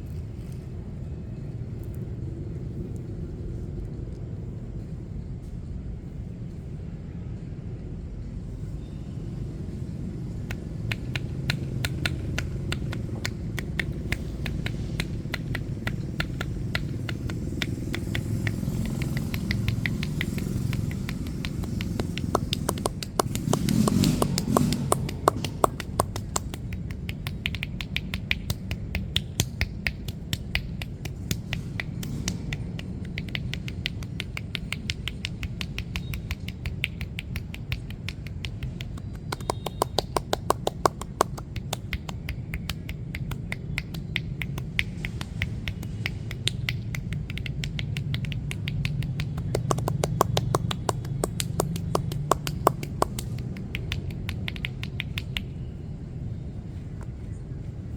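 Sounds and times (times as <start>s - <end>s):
hands slapping skin: 10.4s - 55.6s.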